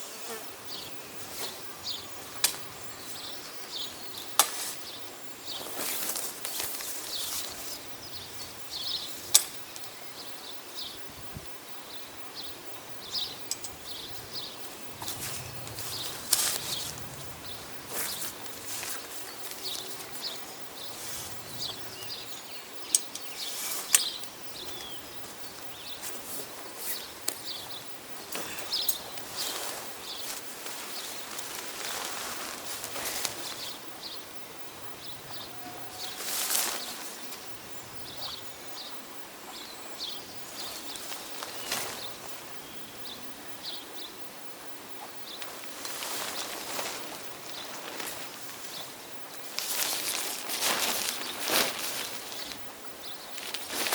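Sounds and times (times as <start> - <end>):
small birds chirping: 0.0 - 53.9
rustling handling noises: 1.1 - 11.6, 12.2 - 38.8, 40.4 - 42.6, 44.8 - 53.9
sharp clicks: 13.1 - 20.5, 22.8 - 25.0.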